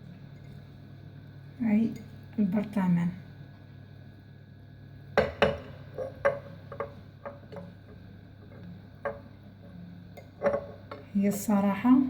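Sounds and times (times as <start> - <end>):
knocks and clinks on glass jar: 10.2 - 11.1.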